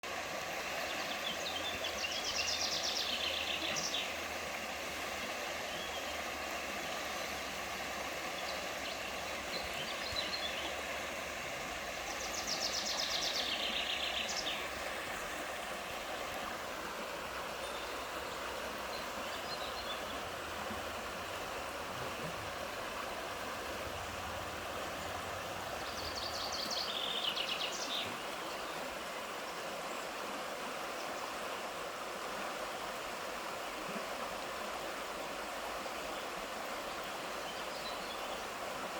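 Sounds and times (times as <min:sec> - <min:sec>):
stream flowing: 0:00.0 - 0:38.9
songbird singing: 0:00.7 - 0:04.4, 0:05.5 - 0:16.5, 0:17.3 - 0:23.0, 0:23.6 - 0:30.2, 0:35.8 - 0:38.6.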